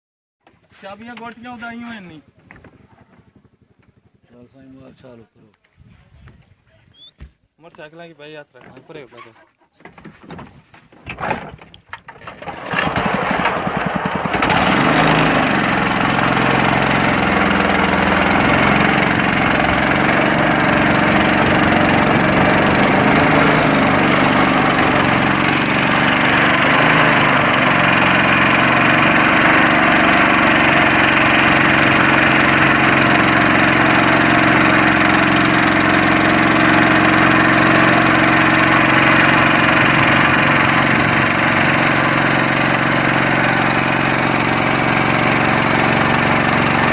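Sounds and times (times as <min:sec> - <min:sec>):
boat engine starting and running: 0:11.0 - 0:46.9.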